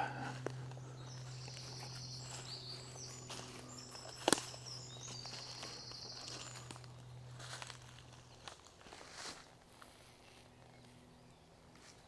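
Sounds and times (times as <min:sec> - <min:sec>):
high thin birdsong: 0:00.0 - 0:08.7
steady low hum: 0:00.0 - 0:12.0.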